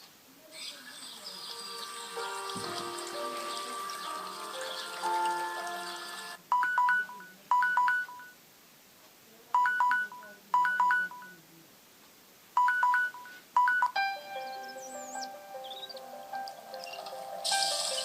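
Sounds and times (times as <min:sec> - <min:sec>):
musical ringtone: 0:01.5 - 0:08.3.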